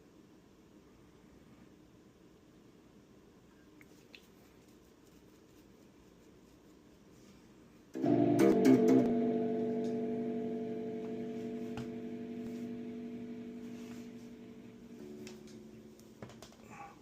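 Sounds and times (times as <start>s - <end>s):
electric guitar strummed: 8.0s - 16.0s.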